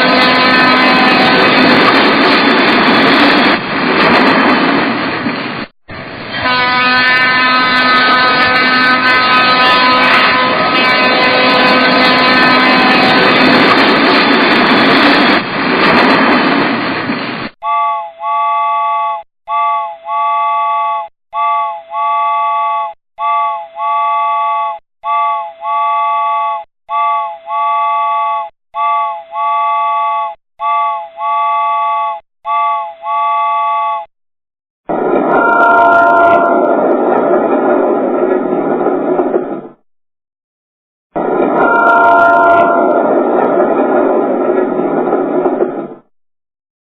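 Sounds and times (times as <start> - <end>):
multi-tone train whistle: 0.0 - 1.6, 6.4 - 13.4, 17.6 - 34.1, 35.3 - 36.7, 41.6 - 43.0
train running noise: 0.0 - 17.6, 34.9 - 39.8, 41.2 - 46.1.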